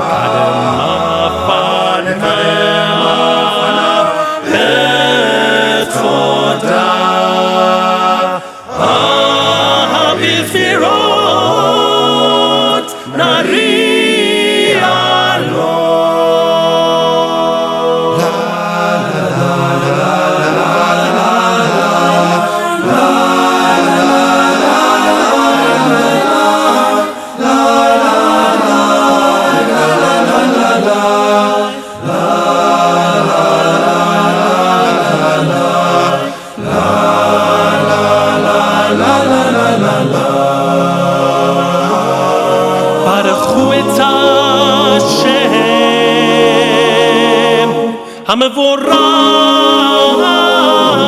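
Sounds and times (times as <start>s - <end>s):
choir singing liturgy: 0.0s - 51.0s.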